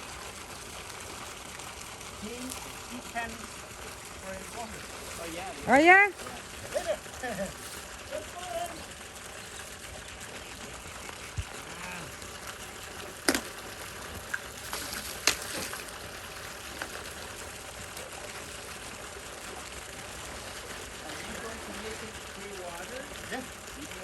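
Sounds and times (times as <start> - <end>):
water running and splashing: 0.0 - 24.0.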